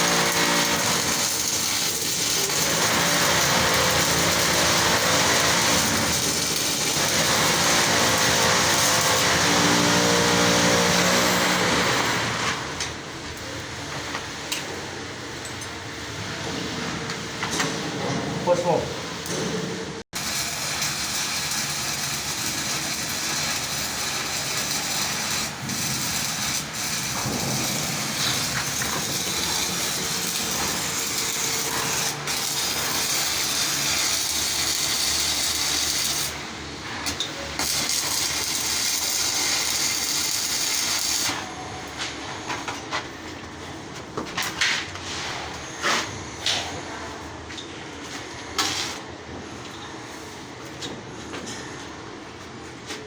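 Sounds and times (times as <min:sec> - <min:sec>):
welding arc crackling: 0:00.0 - 0:12.1, 0:20.2 - 0:41.5.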